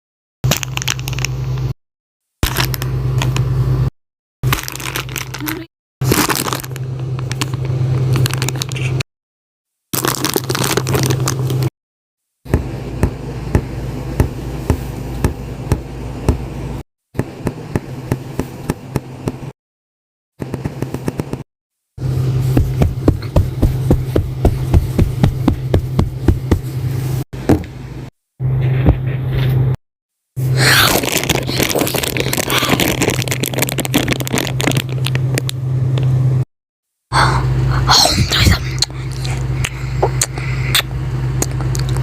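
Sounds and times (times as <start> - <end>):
steady low hum: 12.5 - 19.6, 22.0 - 29.8, 37.1 - 42.0.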